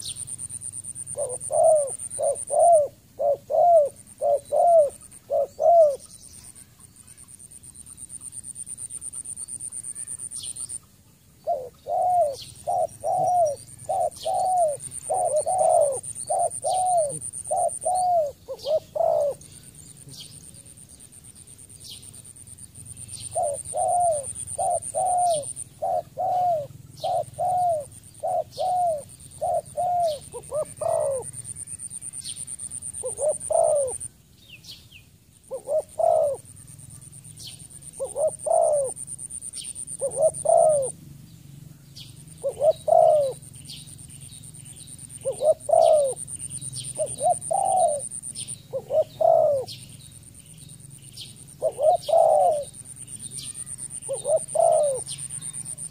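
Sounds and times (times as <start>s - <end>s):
dove cooing: 0.0s - 6.1s, 11.4s - 20.8s, 22.8s - 34.1s, 35.5s - 36.7s, 37.4s - 41.0s, 42.3s - 43.7s, 44.7s - 49.9s, 51.5s - 55.9s
small birds chirping: 0.0s - 55.9s.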